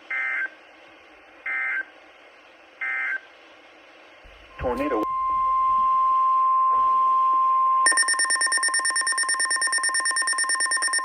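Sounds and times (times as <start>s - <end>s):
steady high warning tone: 4.3s - 11.0s
shrill electronic alarm beeping: 4.5s - 11.0s.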